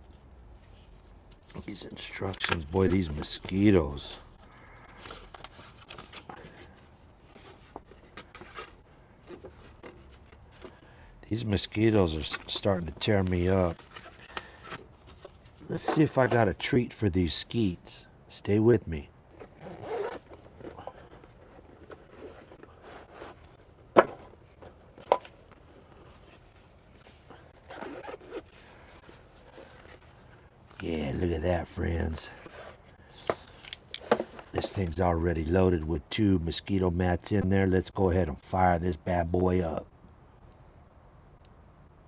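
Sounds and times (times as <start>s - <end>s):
paper and packaging rustling: 0.0s - 10.8s, 11.6s - 16.6s, 19.4s - 31.3s
gear rustling: 19.3s - 31.2s.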